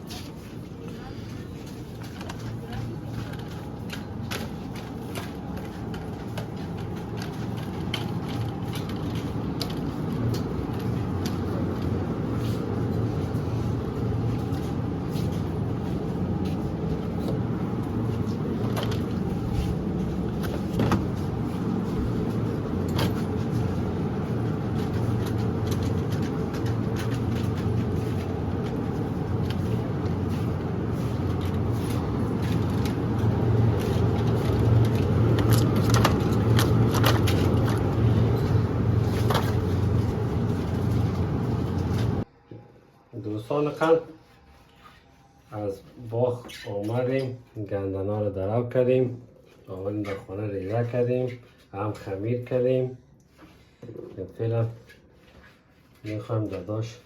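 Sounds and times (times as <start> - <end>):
road vehicle rumble: 0.0 - 42.3.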